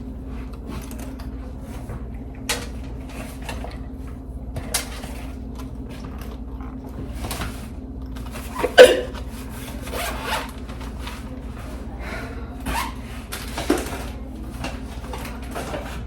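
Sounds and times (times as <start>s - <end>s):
woman hiccupping: 8.6s - 9.2s
zipper zipping: 9.8s - 10.5s.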